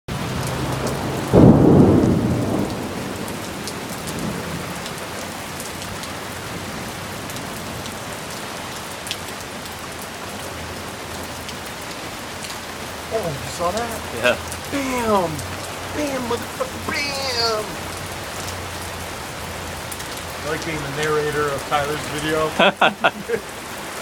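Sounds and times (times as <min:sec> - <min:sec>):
raindrops ticking on a surface: 0:00.1 - 0:24.0
steady rain: 0:00.1 - 0:24.0
thunder clap rumbling: 0:00.3 - 0:04.8.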